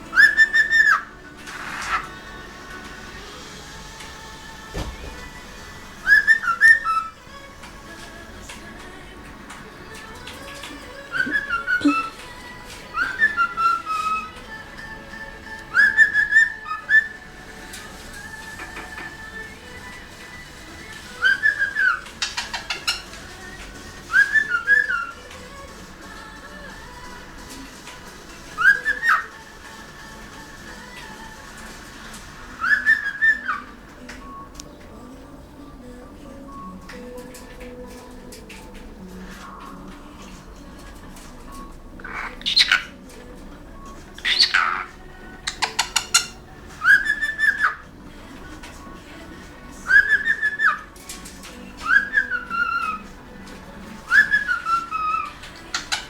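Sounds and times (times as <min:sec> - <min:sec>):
cockatiel whistling: 0:00.0 - 0:08.9, 0:09.9 - 0:34.8, 0:42.0 - 0:43.1, 0:43.8 - 0:56.0
cockatiel harsh calls: 0:42.0 - 0:43.0, 0:44.2 - 0:47.8.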